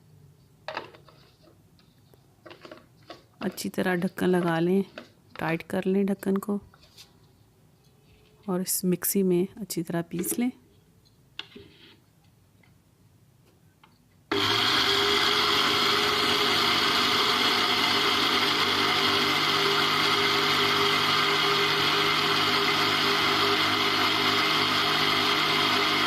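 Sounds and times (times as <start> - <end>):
mixer grinder grinding spices: 14.3 - 26.0.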